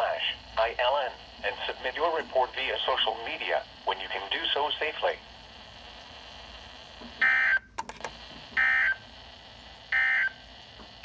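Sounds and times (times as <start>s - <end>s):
digital data tone bursts: 9.9s - 10.4s.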